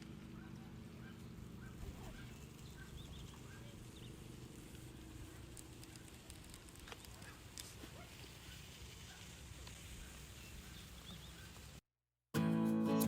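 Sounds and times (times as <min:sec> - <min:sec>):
faint bird chirping: 0:01.0 - 0:04.2, 0:10.0 - 0:11.6.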